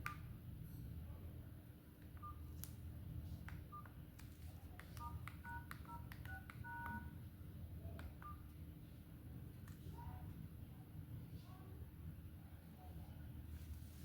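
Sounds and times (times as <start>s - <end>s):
phone keypad dialing tones: 4.9s - 7.1s, 8.0s - 8.5s.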